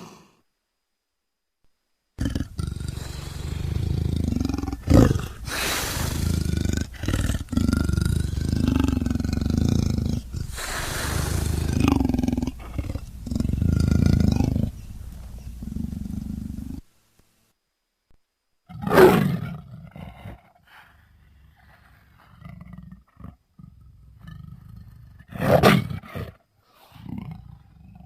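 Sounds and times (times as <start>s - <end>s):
leopard calling: 2.2s - 16.9s.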